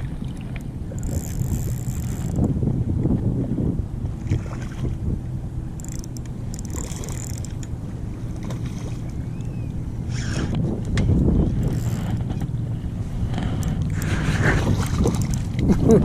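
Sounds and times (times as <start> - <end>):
water splashing: 0.0 - 2.5, 4.1 - 16.0
wind rumbling on microphone: 0.0 - 16.0.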